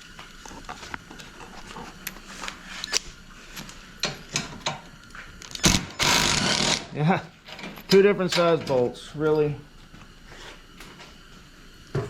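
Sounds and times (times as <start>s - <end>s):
loud burst of noise: 5.6s - 7.0s.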